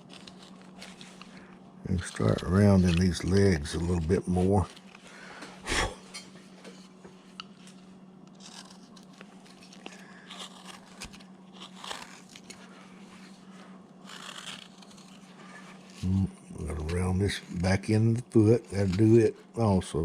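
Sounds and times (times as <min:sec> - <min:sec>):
steady low hum: 0:00.0 - 0:20.0
chisel scraping wood: 0:08.4 - 0:12.6, 0:14.1 - 0:19.3.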